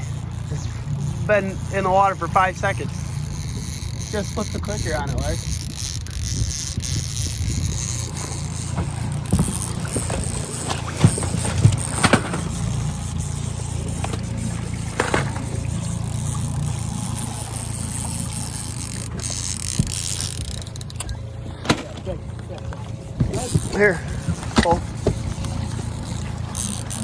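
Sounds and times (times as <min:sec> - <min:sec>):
boat motor running: 0:00.0 - 0:27.0
wind: 0:00.0 - 0:27.0
sharp knocks: 0:08.2 - 0:12.8.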